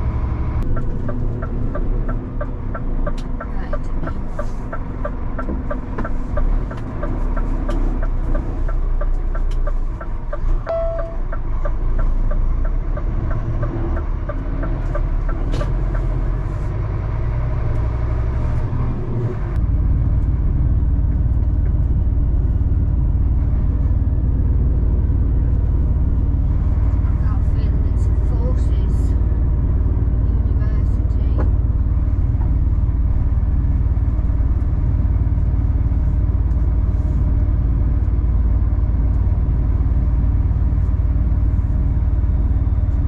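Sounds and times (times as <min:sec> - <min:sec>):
diesel lorry engine from cab: 0:00.0 - 0:43.0
turn indicator ticking: 0:00.6 - 0:16.8
short beep: 0:10.7 - 0:11.3.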